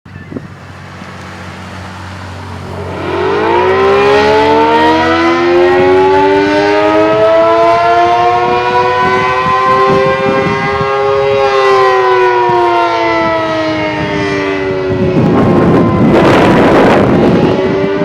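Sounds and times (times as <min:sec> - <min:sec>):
warning siren wailing: 0:00.1 - 0:18.0
wind noise on microphone: 0:00.1 - 0:18.0.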